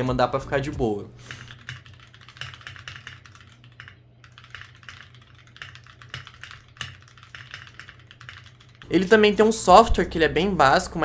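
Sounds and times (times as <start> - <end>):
mechanical keyboard keystroke clacks: 1.3 - 8.9.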